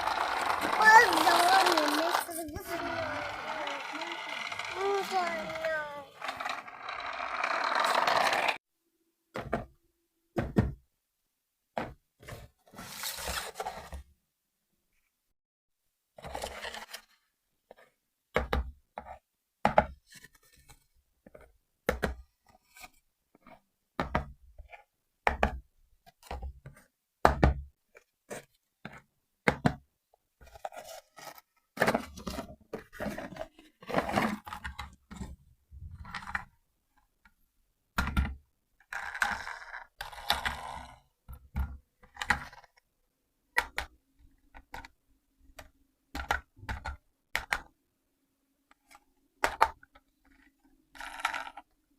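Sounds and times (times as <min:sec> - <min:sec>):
rustling and scraping: 0:12.2 - 0:14.0, 0:30.4 - 0:36.5.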